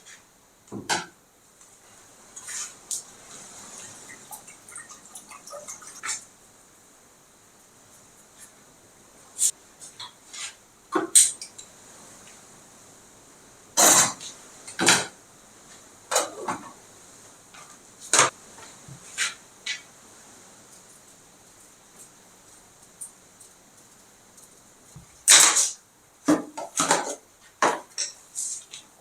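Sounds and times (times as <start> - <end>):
pots and dishes clinking: 26.6 - 28.3.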